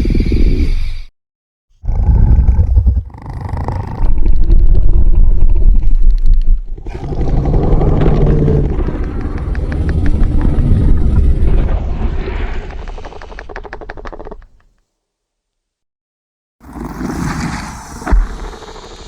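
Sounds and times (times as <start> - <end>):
monster roaring and growling: 1.8 - 5.7, 6.7 - 13.1.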